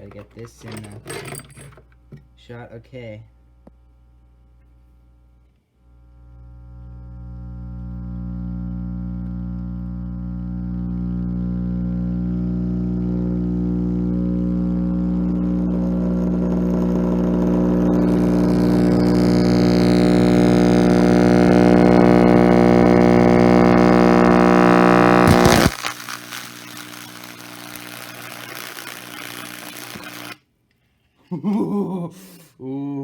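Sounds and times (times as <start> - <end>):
faint crackling noise: 5.4 - 30.5
loudspeaker buzzing hum: 6.0 - 30.3.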